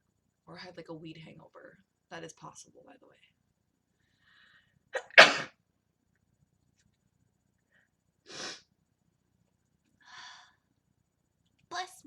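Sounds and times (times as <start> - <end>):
quiet short breaths: 3.9 - 4.8
woman sneezing: 5.0 - 5.5.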